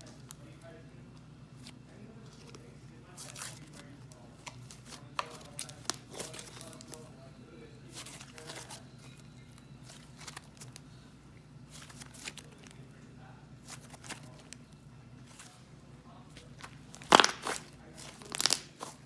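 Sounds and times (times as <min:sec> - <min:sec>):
slime squishing crackly clicks: 0:16.5 - 0:19.0.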